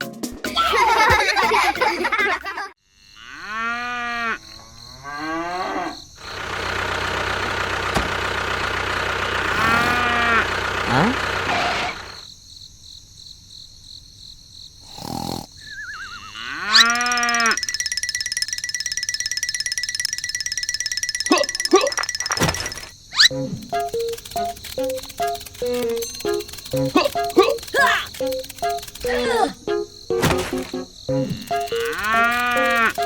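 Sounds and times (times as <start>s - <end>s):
cow mooing: 3.2s - 6.0s, 9.5s - 12.0s, 15.7s - 17.6s, 31.4s - 33.0s
steady machine hum: 6.2s - 12.2s, 23.6s - 29.9s, 30.6s - 33.0s.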